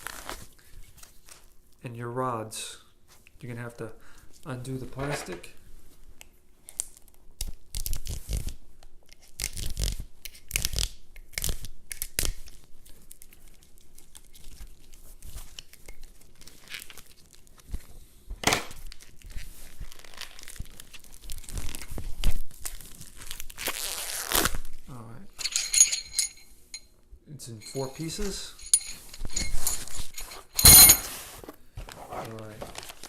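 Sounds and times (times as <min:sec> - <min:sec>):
plastic wrapping tearing and crinkling: 0:00.0 - 0:01.5, 0:06.7 - 0:17.6, 0:18.8 - 0:24.8, 0:32.3 - 0:33.0.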